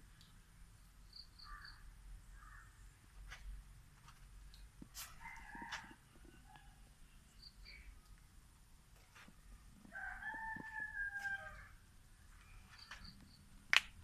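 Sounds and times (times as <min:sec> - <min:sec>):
rooster crowing faintly: 0:05.0 - 0:06.9, 0:09.8 - 0:11.9.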